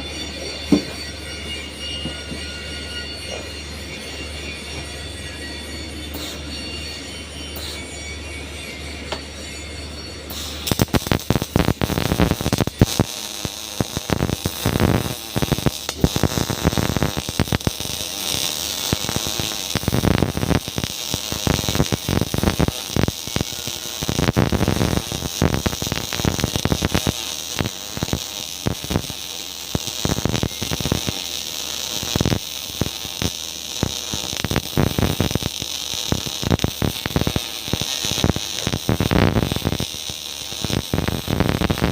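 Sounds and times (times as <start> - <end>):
welding arc crackling: 6.1 - 6.5, 10.2 - 41.9.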